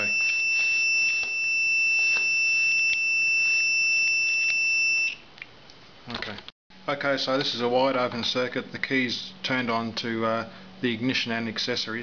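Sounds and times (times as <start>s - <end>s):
multimeter high-pitched beep: 0.0s - 5.2s.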